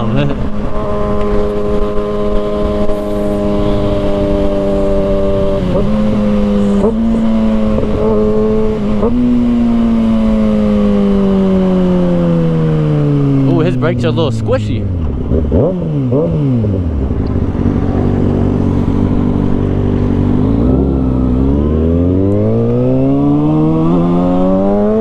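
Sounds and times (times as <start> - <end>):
wind rushing: 0.0 - 11.6
motorcycle engine revving: 0.0 - 25.0.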